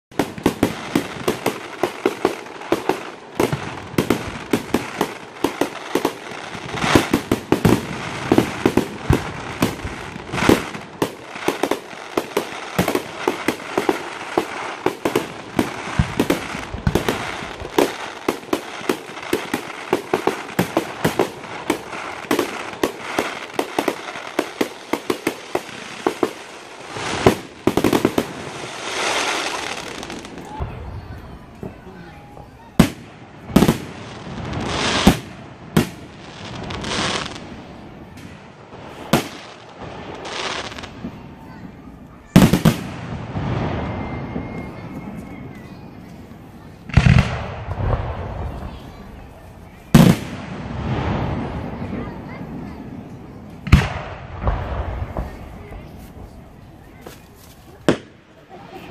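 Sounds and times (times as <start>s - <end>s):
fireworks bangs and crackles: 0.1s - 58.9s.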